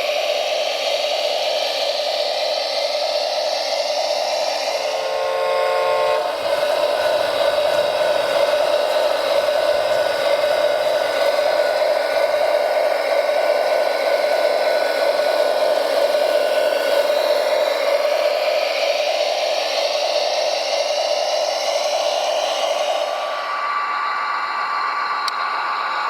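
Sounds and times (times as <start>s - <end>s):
high-pitched motor whine: 0.0s - 26.0s
horn-like chord: 4.9s - 9.2s.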